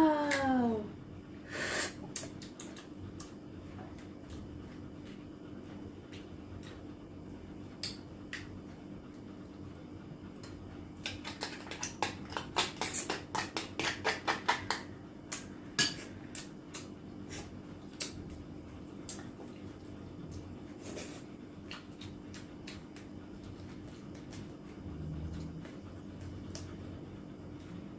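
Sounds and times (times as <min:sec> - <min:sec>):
faint steady hum: 0:00.0 - 0:27.9.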